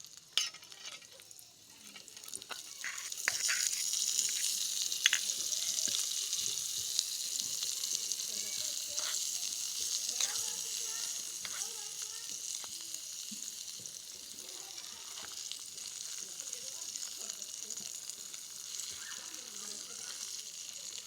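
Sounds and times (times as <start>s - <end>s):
food sizzling in oil: 0.0s - 21.0s
stirring clicks: 1.8s - 6.1s, 9.8s - 12.0s.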